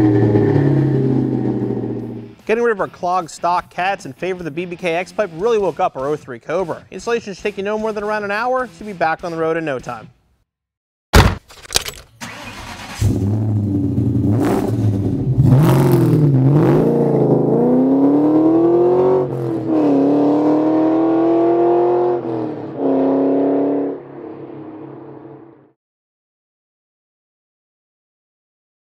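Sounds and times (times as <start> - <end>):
car engine revving: 0.0 - 2.4, 12.2 - 25.7.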